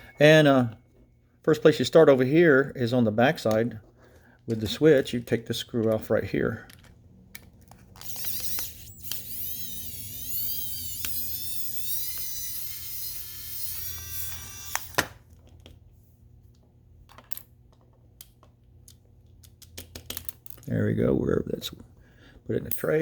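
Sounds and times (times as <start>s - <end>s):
small parts clicking: 6.7s - 15.8s, 17.1s - 20.7s
electric screwdriver whining: 8.0s - 15.2s.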